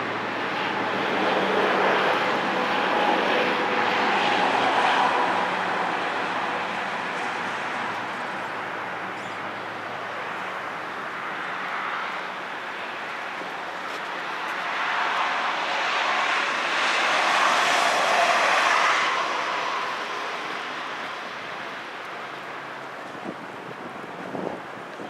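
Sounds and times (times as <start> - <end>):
vehicle passing by: 14.6 - 22.0.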